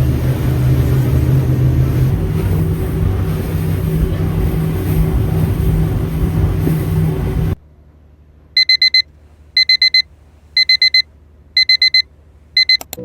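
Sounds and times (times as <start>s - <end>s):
engine running: 0.0s - 7.6s.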